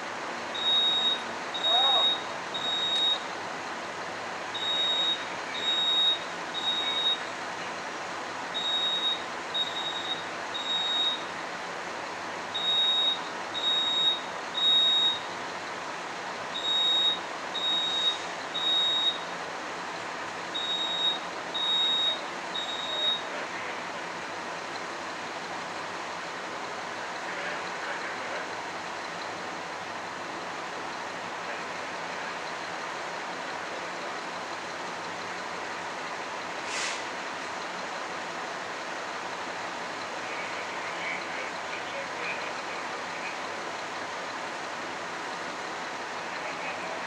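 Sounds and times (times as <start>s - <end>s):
fire alarm beeping: 0.6s - 3.2s, 4.5s - 7.3s, 8.6s - 11.3s, 12.5s - 15.3s, 16.5s - 19.3s, 20.6s - 23.3s.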